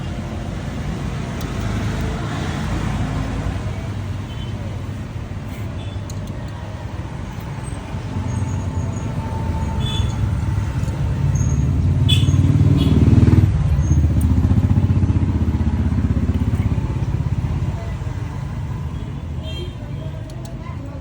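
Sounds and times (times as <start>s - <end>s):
motorcycle engine running: 8.2s - 19.6s.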